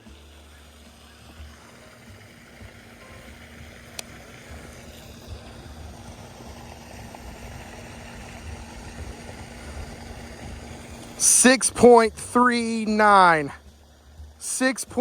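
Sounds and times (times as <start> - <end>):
faint steady hum: 0.0 - 15.0
wind rumble on microphone: 2.1 - 11.2.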